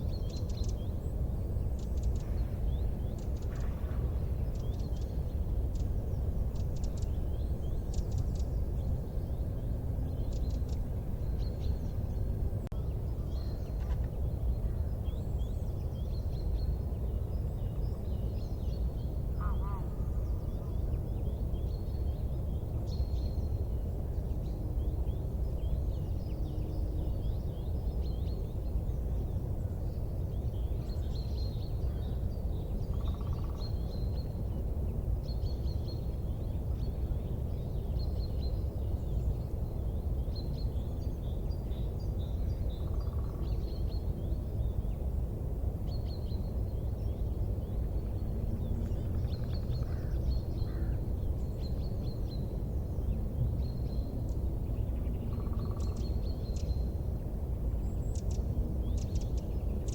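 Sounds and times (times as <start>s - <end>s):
small birds chirping: 0.0s - 45.2s, 45.8s - 59.9s
steady low rumble: 0.0s - 59.9s
low bird call: 19.4s - 20.7s.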